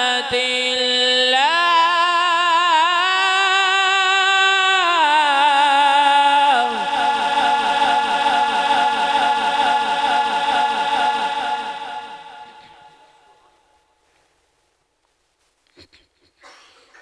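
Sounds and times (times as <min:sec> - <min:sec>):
person reciting with vibrato: 0:00.0 - 0:13.5.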